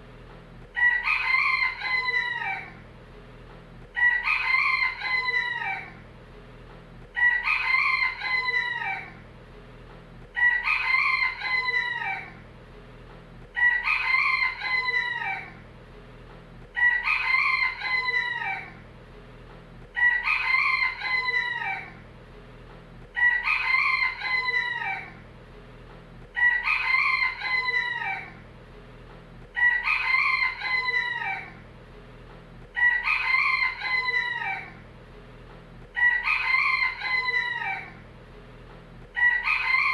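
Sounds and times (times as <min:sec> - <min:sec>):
rooster crowing: 0:00.6 - 0:02.8, 0:04.0 - 0:06.0, 0:07.2 - 0:09.2, 0:10.4 - 0:12.4, 0:13.6 - 0:15.6, 0:16.8 - 0:18.8, 0:20.0 - 0:22.0, 0:23.2 - 0:25.2, 0:26.3 - 0:28.4, 0:29.5 - 0:31.6, 0:32.7 - 0:34.8, 0:35.9 - 0:38.0, 0:39.1 - 0:39.9.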